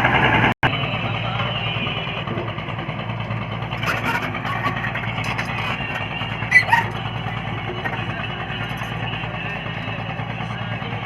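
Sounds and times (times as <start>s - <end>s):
construction machinery engine running: 0.0s - 11.0s
clinks and scrapes: 3.6s - 9.9s.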